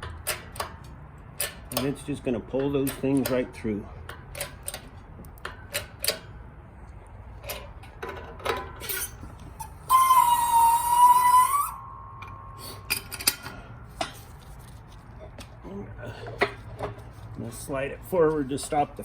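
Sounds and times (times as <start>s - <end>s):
metallic clicks and ticks: 0.0s - 3.5s
loud high steady squeal: 8.9s - 12.9s.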